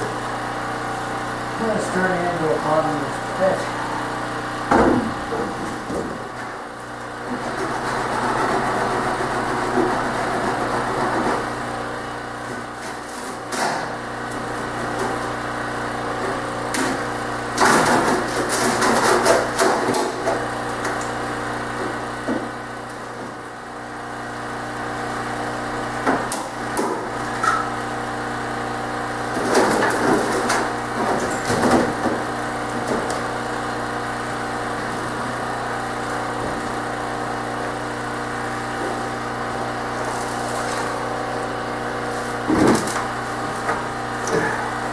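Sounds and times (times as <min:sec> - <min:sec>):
steady machine hum: 0:00.0 - 0:44.9.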